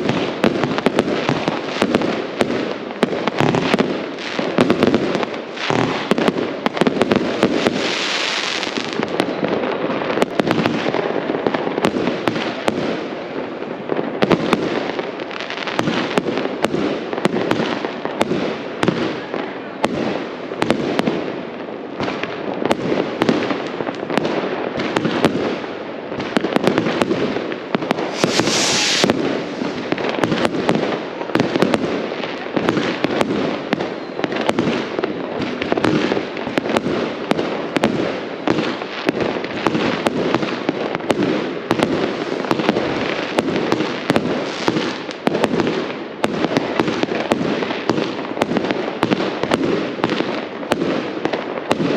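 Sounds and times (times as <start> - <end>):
firework hiss: 0.0 - 9.2, 27.8 - 32.0, 41.2 - 45.6
fireworks bangs and crackles: 0.0 - 51.9.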